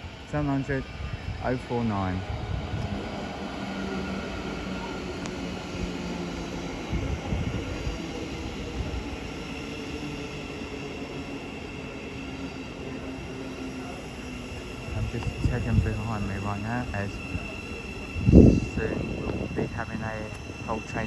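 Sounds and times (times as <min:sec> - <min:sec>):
train wheels rumbling on rails: 0:00.0 - 0:21.0
faint high whine: 0:12.0 - 0:21.0.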